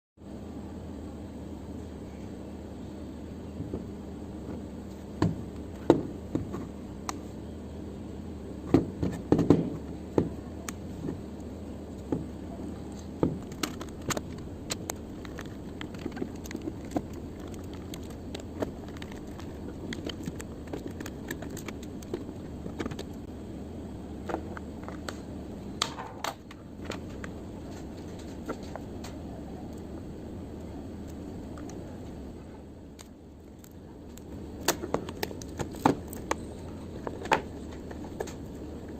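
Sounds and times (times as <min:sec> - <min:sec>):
steady low hum: 0:00.2 - 0:38.9
small hard objects clicking: 0:13.4 - 0:23.2, 0:32.9 - 0:36.4.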